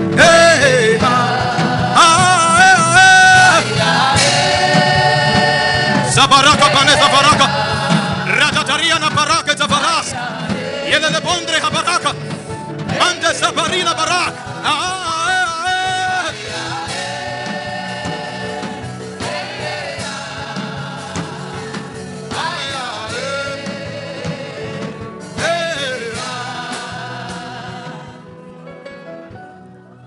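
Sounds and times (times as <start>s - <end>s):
person singing: 0.0s - 17.2s
held backing chords: 0.0s - 30.0s.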